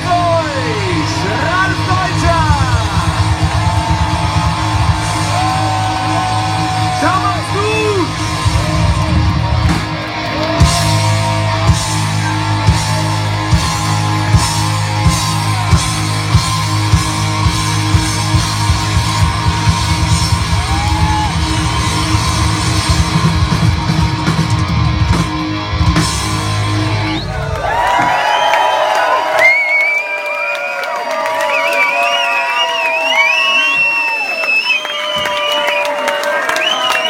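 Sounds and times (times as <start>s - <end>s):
electric guitar: 0.0s - 28.2s
steady drum beat: 0.0s - 28.2s
bass guitar: 0.0s - 28.4s
crowd cheering: 0.0s - 37.0s.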